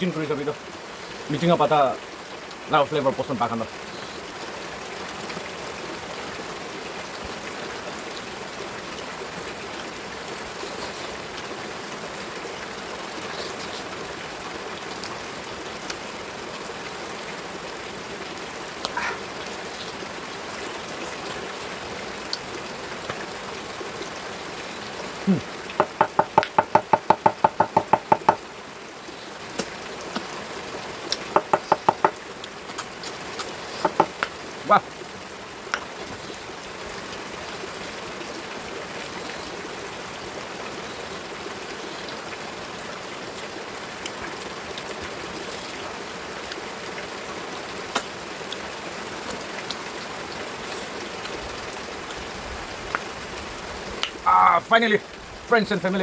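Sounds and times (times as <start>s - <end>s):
steady hiss: 10.2s - 11.8s, 12.4s - 56.0s
sharp ringing knocks: 25.8s - 28.4s.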